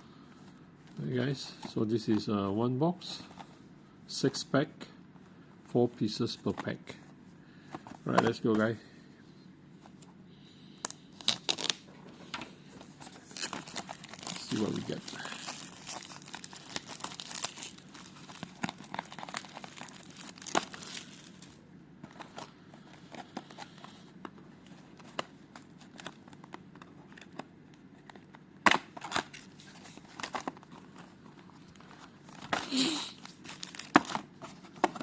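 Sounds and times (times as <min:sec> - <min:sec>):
packaging tearing and crinkling: 0:11.2 - 0:11.8, 0:13.0 - 0:21.6, 0:32.3 - 0:35.0.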